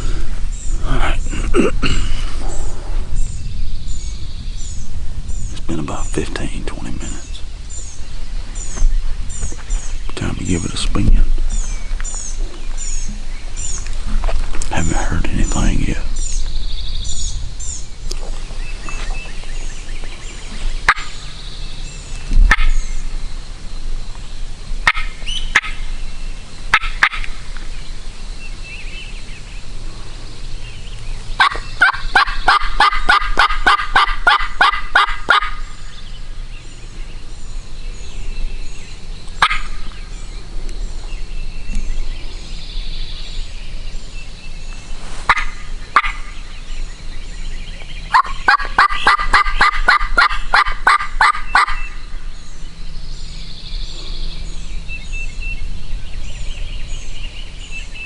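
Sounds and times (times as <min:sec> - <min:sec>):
songbirds chirping: 0:00.0 - 0:58.0
turkey call notes: 0:31.4 - 0:35.8, 0:39.3 - 0:40.0, 0:45.2 - 0:46.5, 0:47.8 - 0:52.1.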